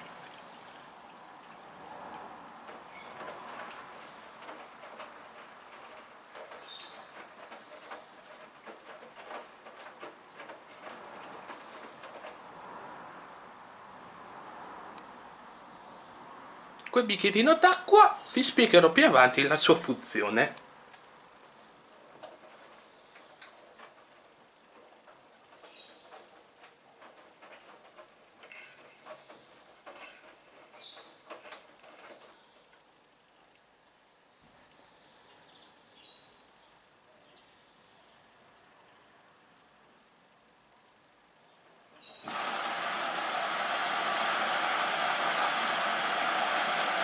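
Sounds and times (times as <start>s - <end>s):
water trickling in washing machine drum: 0.0s - 12.4s.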